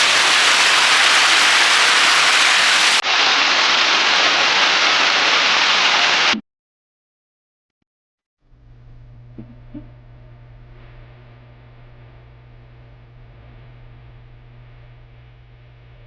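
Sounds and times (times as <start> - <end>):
heavy rain rushing: 0.0 - 6.4.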